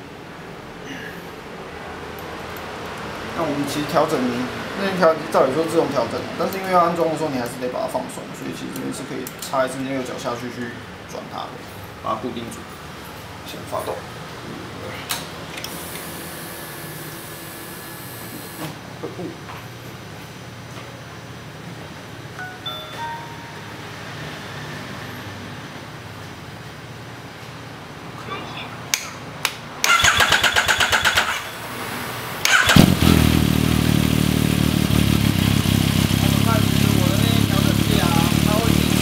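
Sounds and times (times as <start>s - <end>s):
motorcycle starter cranking: 29.8s - 31.6s, 32.4s - 34.0s
motorcycle engine running: 32.6s - 39.0s.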